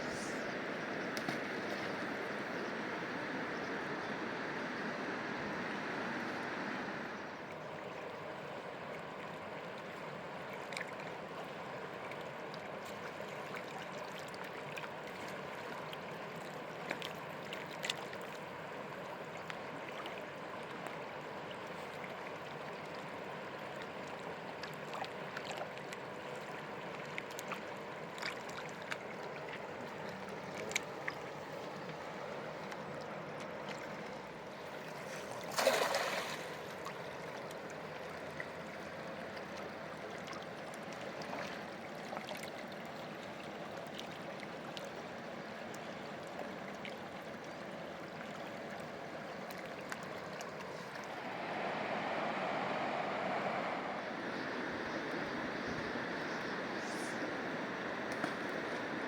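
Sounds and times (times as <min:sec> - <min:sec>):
river water flowing: 0:00.0 - 0:59.0
rush of noise: 0:50.8 - 0:59.0.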